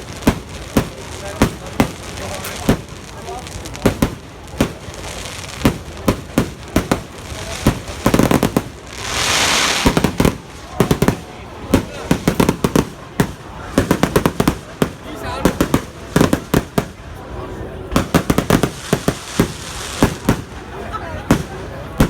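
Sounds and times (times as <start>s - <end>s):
fireworks bangs: 0.0s - 22.0s
fireworks hissing crackle: 0.0s - 22.0s.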